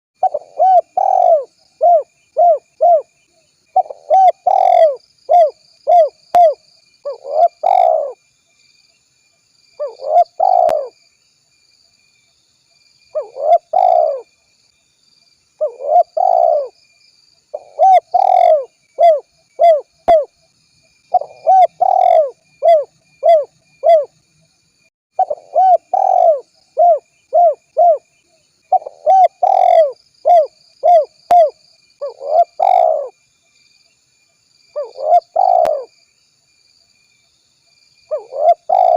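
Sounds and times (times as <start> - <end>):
dove cooing: 0.2 - 3.1, 3.8 - 8.2, 9.8 - 11.0, 13.1 - 14.3, 15.6 - 16.8, 17.5 - 20.3, 21.1 - 24.1, 25.2 - 28.1, 28.7 - 33.2, 34.8 - 35.9, 38.1 - 38.9.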